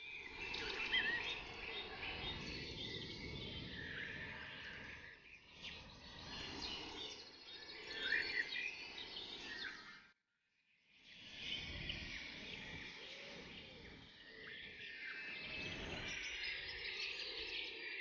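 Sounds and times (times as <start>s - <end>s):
birds chirping and singing: 0.0s - 9.9s
woodland ambience hiss: 0.0s - 9.9s, 11.0s - 18.0s.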